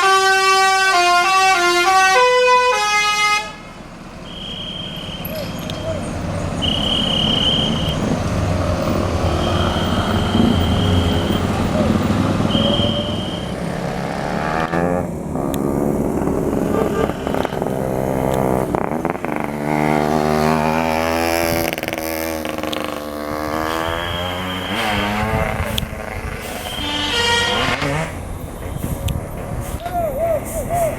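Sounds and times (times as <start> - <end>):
bus driving past: 0.6 - 30.9.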